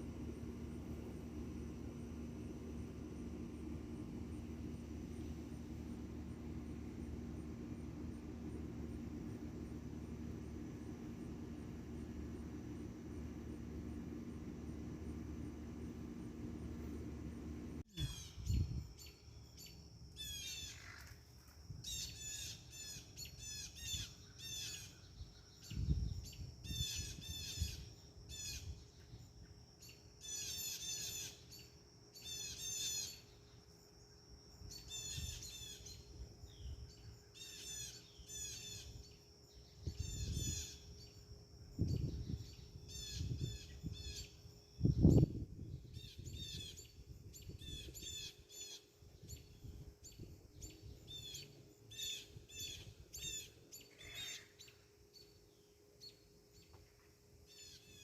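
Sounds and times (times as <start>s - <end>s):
wind on microphone: 41.8s - 42.5s.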